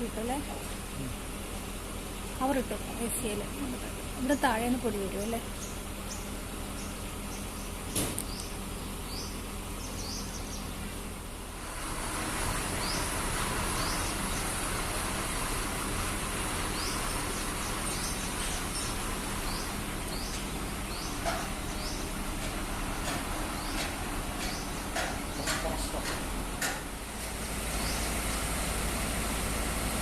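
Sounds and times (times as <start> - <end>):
drilling rig machine noise: 11.5 - 30.0.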